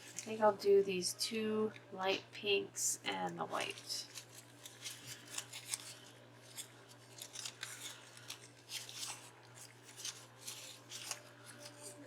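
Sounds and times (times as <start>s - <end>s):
faint steady hum: 0.0s - 12.0s
paper crinkling and clicking: 3.3s - 12.0s.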